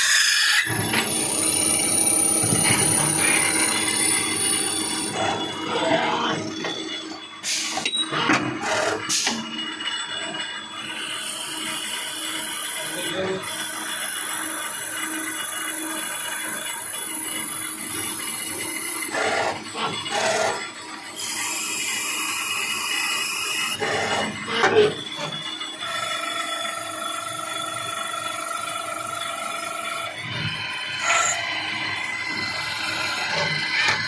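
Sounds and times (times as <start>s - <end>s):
lathe whining tones: 0.0s - 34.0s
machine clatter: 27.6s - 34.0s.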